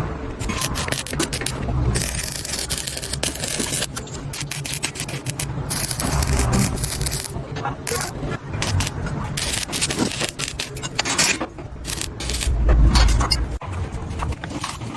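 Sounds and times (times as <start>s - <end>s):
metal clinks and scrapes: 0.4s - 14.9s
heavy low rumble: 5.1s - 14.9s.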